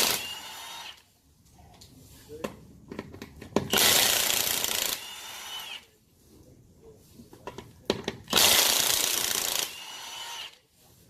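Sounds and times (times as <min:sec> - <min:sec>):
impact wrench bursts: 0:00.0 - 0:01.0, 0:03.6 - 0:05.8, 0:08.2 - 0:10.6.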